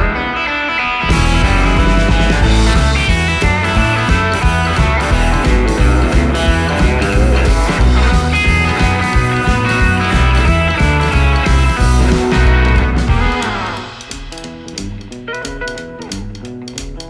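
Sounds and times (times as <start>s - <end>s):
rock music: 0.0s - 17.0s
pulsing bass line: 1.1s - 14.0s.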